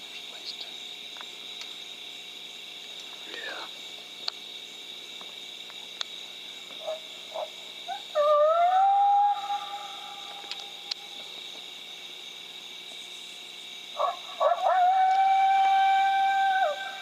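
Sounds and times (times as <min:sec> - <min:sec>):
steady high hum: 0:00.0 - 0:14.7
coyote howling: 0:06.8 - 0:10.6, 0:14.0 - 0:17.0.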